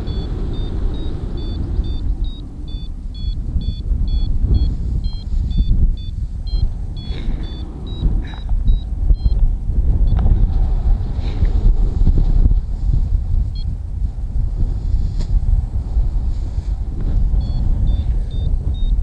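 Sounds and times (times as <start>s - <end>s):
variometer two-pitch beeps: 0.0s - 9.4s, 17.4s - 19.0s
wind buffeting microphone: 0.0s - 19.0s.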